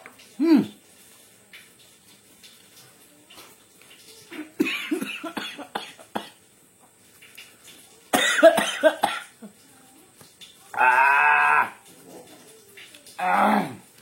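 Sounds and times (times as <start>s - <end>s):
person coughing: 8.2s - 9.3s.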